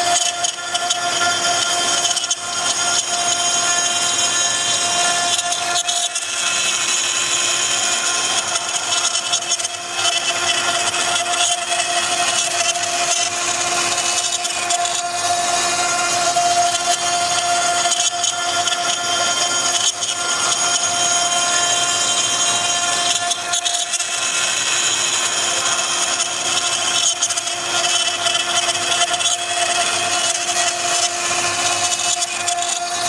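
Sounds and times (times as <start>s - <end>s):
bit cutting wood: 0.0s - 33.0s
router spindle whine: 0.0s - 33.0s.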